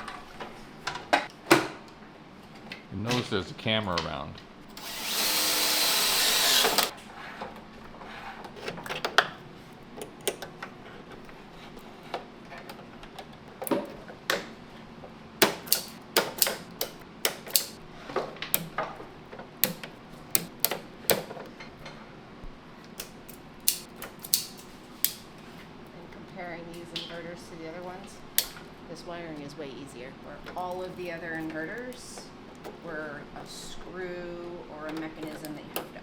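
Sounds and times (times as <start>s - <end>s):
power drill whirring: 4.7s - 6.9s
hardware clicking and clacking: 15.4s - 17.8s, 19.6s - 21.4s, 23.0s - 25.2s, 34.8s - 36.0s.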